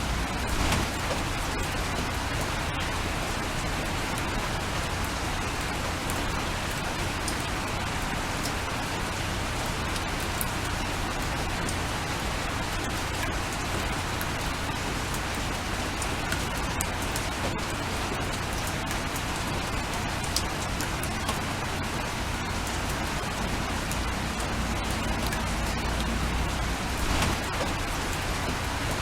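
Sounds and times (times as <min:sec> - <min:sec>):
steady rain: 0:00.0 - 0:29.0.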